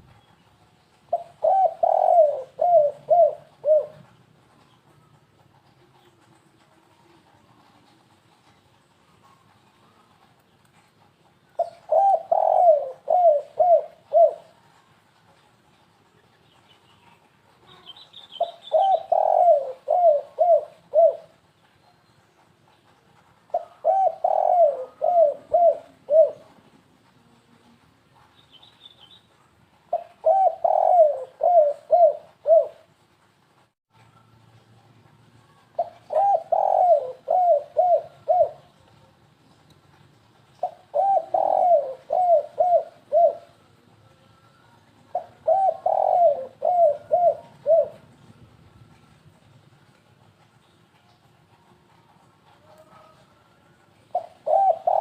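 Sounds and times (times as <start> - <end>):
dove cooing: 1.1 - 4.2, 11.6 - 14.6, 17.7 - 21.4, 23.5 - 26.7, 29.9 - 33.0, 35.8 - 38.8, 40.6 - 43.6, 45.1 - 48.2, 52.5 - 55.0.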